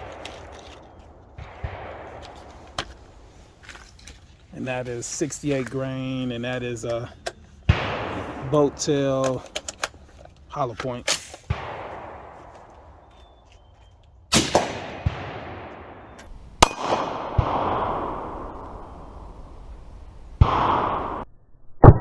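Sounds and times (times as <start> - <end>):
rifle shots echoing: 0.0 - 3.6, 7.7 - 13.7, 14.3 - 19.0, 20.4 - 21.2.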